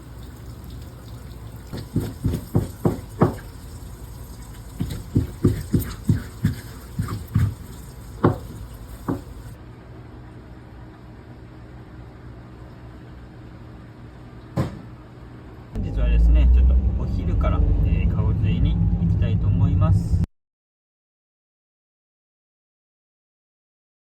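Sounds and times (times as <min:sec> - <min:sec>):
water splashing: 0:00.0 - 0:09.6.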